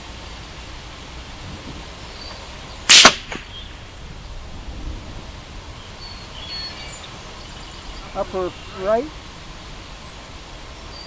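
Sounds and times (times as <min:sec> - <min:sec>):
rifle shot: 0:02.9 - 0:03.7.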